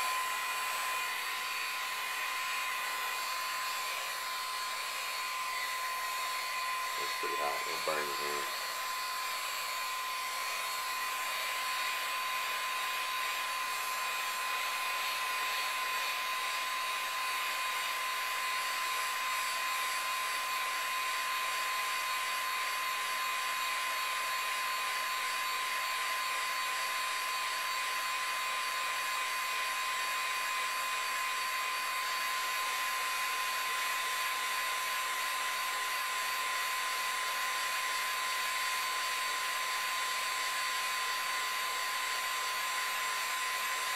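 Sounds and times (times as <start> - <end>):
heat gun blowing hot air: 0.0 - 43.9.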